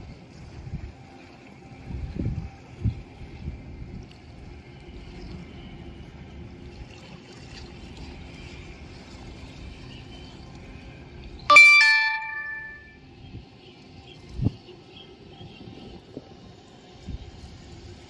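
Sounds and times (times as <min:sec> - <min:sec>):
water noise: 0:00.0 - 0:13.0
wind: 0:00.0 - 0:18.0
bell-like chime: 0:11.5 - 0:13.0.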